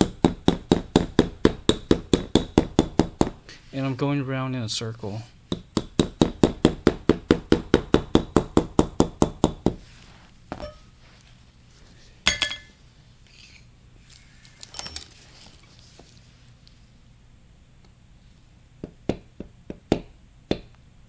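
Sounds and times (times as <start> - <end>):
hammer tapping metal punch: 10.5 - 10.9, 12.3 - 12.7
metal clinks and knocks: 10.5 - 11.0, 12.3 - 12.8, 14.6 - 15.2.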